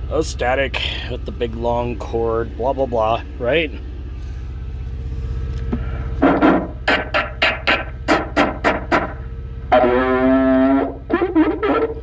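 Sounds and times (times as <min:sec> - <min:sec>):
diesel truck engine idling: 0:00.0 - 0:12.0
buzzy electronic tone: 0:06.2 - 0:12.0
person counting into a microphone: 0:09.7 - 0:12.0.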